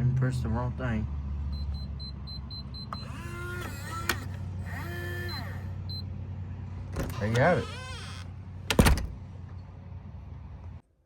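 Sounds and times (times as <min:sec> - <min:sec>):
small electric motor whining: 0:03.0 - 0:05.8.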